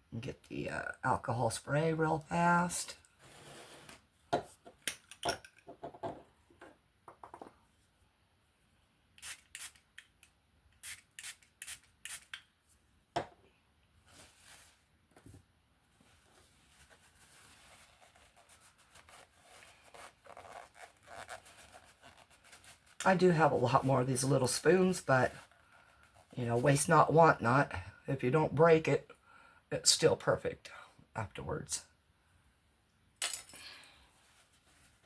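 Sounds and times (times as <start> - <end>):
spray bottle spritzes: 10.8 - 12.4
handling and rubbing sounds: 14.0 - 26.9, 34.0 - 35.0.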